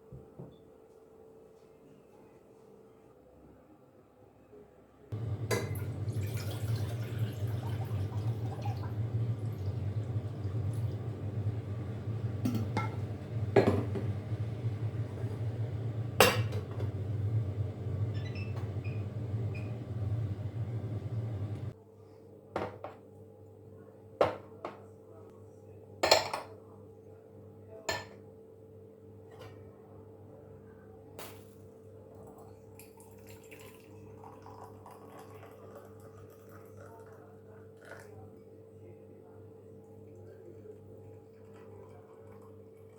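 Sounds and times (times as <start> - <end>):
steady low hum: 5.1 - 21.8.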